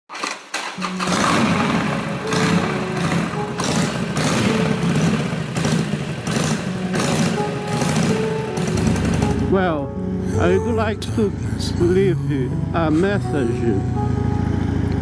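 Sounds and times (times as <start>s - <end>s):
motorcycle engine running: 0.8s - 9.6s.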